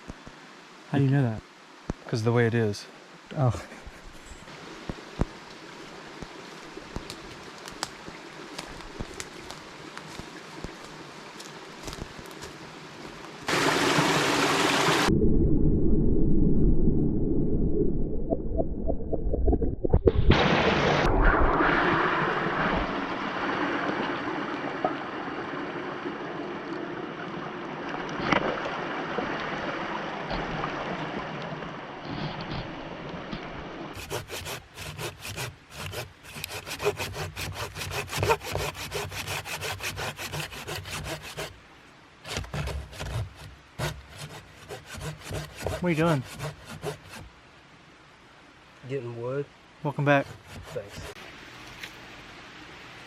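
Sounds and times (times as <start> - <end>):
hand saw cutting wood: 34.0 - 41.6, 42.2 - 47.3, 50.0 - 51.2.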